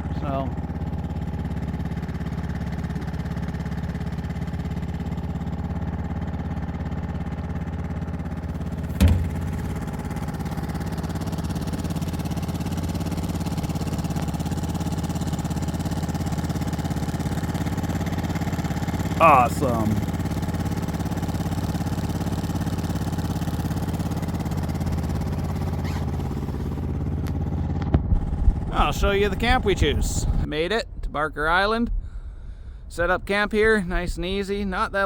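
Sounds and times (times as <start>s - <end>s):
outboard motor running: 0.0s - 30.5s
single thump: 8.9s - 9.8s.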